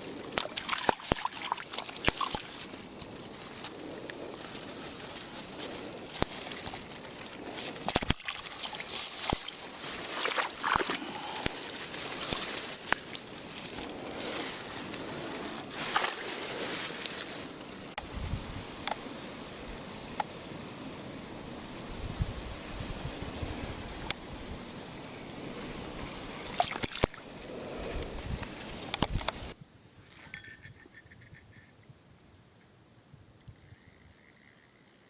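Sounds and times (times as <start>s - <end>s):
mountain stream running: 0.0s - 17.6s.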